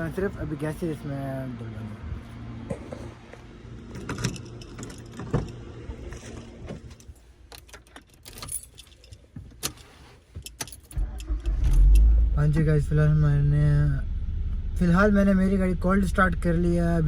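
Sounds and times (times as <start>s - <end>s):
car keys jangling: 3.9s - 12.1s
car engine starting and running: 10.9s - 17.0s.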